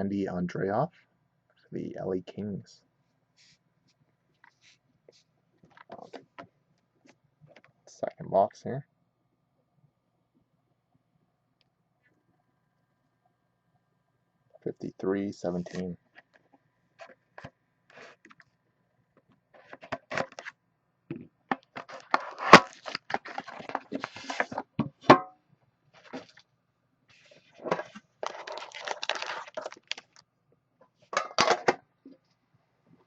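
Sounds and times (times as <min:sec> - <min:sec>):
cardboard packaging tearing: 0:21.8 - 0:24.6, 0:28.2 - 0:30.2
wrapper crinkling: 0:21.8 - 0:24.6, 0:27.8 - 0:30.2.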